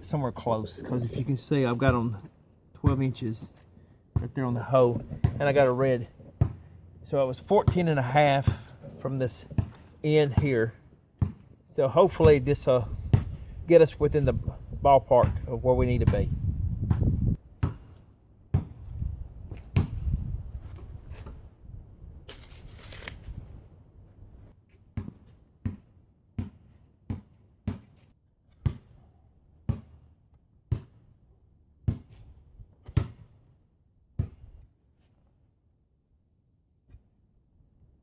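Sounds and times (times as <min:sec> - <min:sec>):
rustling and scraping: 0:08.5 - 0:10.7, 0:22.3 - 0:23.7
dull thuds: 0:12.2 - 0:13.5.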